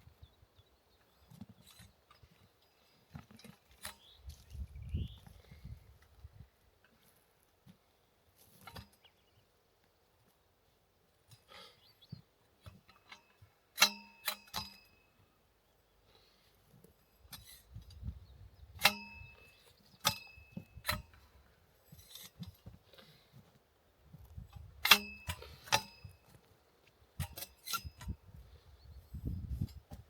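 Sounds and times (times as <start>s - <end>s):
sharp metallic clinks: 18.8s - 21.1s.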